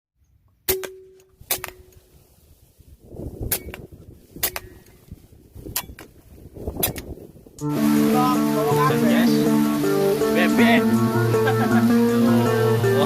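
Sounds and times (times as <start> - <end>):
air rifle shots: 0.7 - 2.2, 3.4 - 5.0, 6.8 - 7.2
wind rumble on microphone: 1.4 - 7.8.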